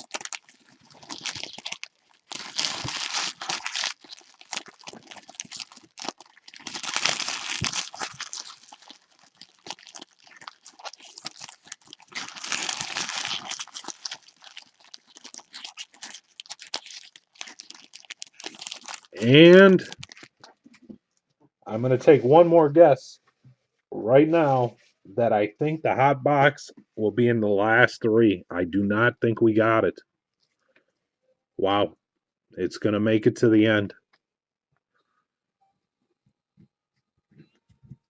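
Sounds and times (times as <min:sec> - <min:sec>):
foil wrappers tearing and crinkling: 0:00.0 - 0:20.5.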